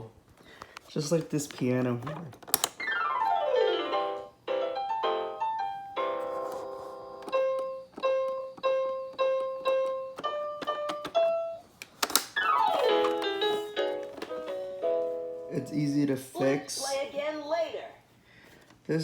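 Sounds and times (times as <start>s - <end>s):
toy piano electronic notes: 2.8s - 11.6s, 12.4s - 17.0s.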